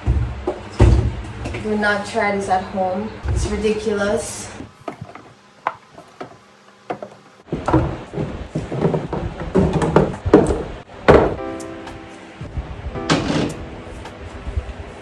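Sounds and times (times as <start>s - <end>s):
refrigerator items knocking and clattering: 0.0s - 1.7s, 4.8s - 11.5s, 13.1s - 13.6s.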